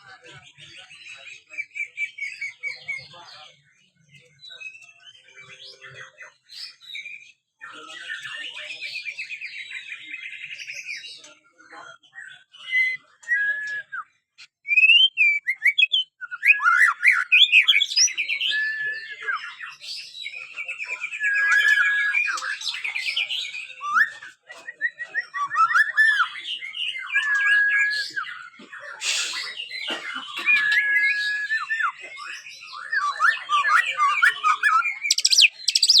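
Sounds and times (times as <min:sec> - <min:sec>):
songbird whistling and trilling: 0:12.5 - 0:36.0.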